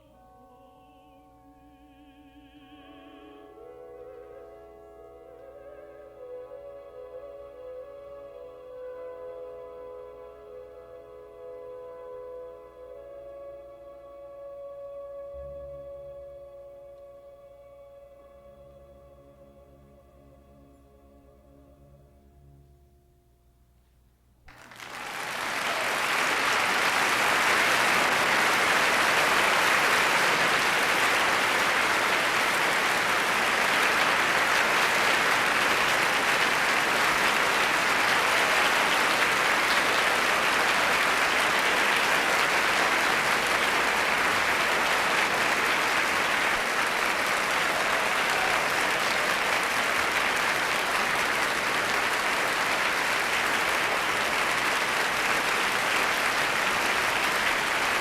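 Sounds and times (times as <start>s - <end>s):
audience applauding: 24.5s - 58.0s.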